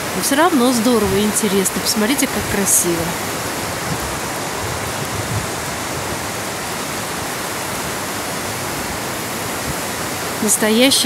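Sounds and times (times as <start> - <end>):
fast river rushing: 0.0 - 11.0.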